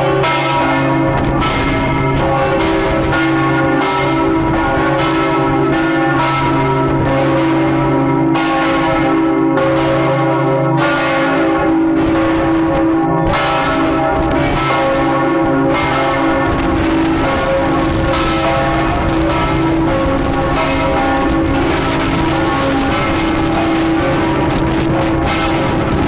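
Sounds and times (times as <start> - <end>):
large church bells ringing: 0.0 - 26.0.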